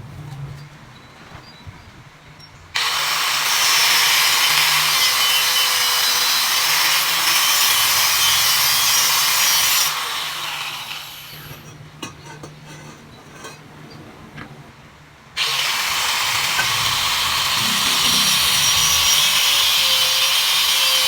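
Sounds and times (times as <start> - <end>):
power tool cutting: 2.8 - 11.6, 15.4 - 21.0.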